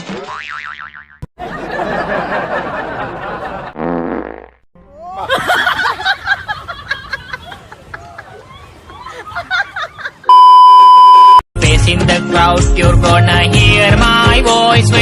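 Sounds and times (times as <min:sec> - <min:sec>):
people laughing: 0:01.4 - 0:03.8, 0:04.9 - 0:10.3
fart sound effects: 0:03.7 - 0:04.7
excited voices: 0:07.1 - 0:10.3.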